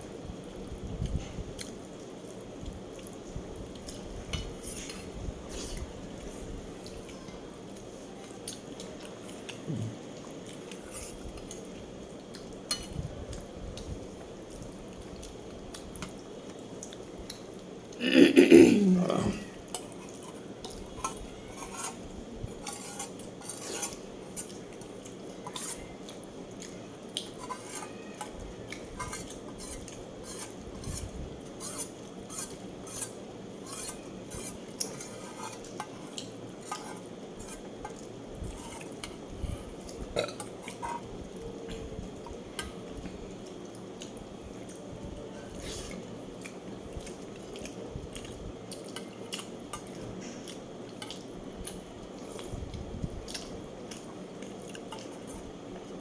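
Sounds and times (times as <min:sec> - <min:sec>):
steady background hiss: 0:00.0 - 0:56.0
cutlery scraping a plate: 0:19.7 - 0:24.6, 0:25.4 - 0:25.8, 0:27.4 - 0:28.3, 0:29.0 - 0:41.1.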